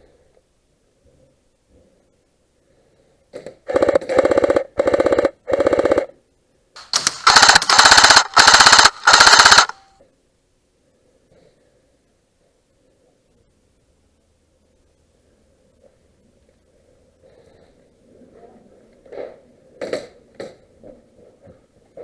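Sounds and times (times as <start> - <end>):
electric toy gun firing bursts: 3.7 - 6.1, 6.8 - 9.9.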